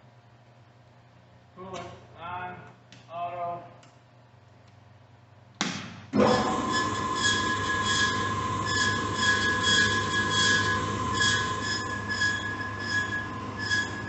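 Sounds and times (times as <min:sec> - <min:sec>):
bandsaw whine and hum: 0:06.1 - 0:14.0
high-pitched saw squeal: 0:06.3 - 0:14.0.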